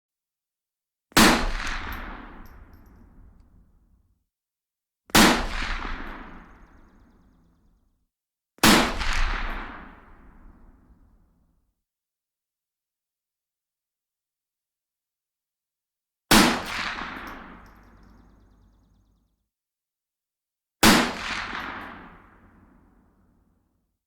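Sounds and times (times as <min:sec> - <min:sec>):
rifle shots echoing: 0:05.2 - 0:06.9.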